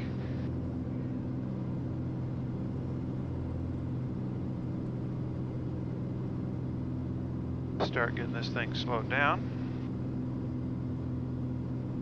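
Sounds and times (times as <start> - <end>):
propeller plane engine droning: 0.0 - 12.0.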